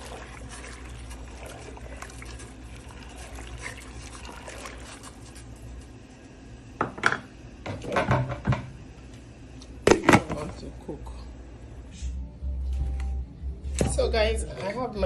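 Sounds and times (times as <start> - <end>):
water boiling and bubbling: 0.0 - 6.8.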